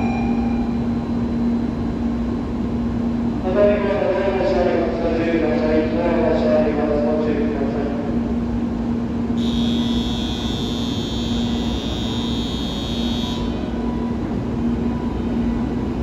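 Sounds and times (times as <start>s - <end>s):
platform buzzer high electric tone: 9.4s - 14.4s.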